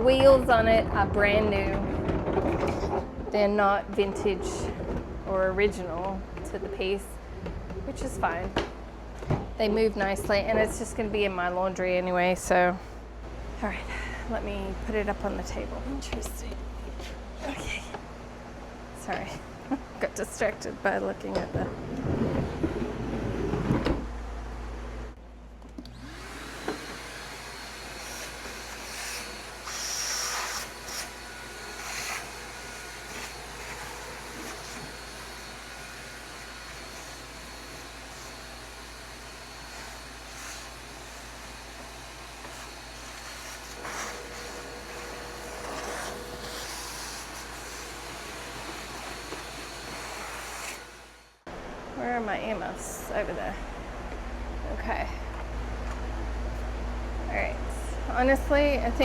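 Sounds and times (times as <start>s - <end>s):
vacuum cleaner running: 25.8s - 51.4s.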